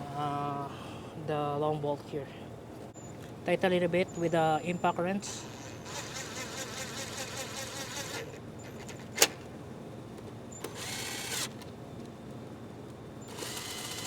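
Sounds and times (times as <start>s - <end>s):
cordless impact wrench running: 5.4s - 9.4s, 10.6s - 11.7s, 13.2s - 14.0s.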